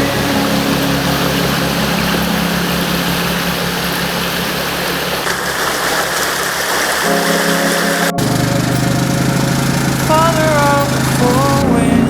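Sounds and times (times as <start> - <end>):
engine running with low hum: 0.0 - 5.3, 7.8 - 12.0
even rushing noise: 7.0 - 12.0.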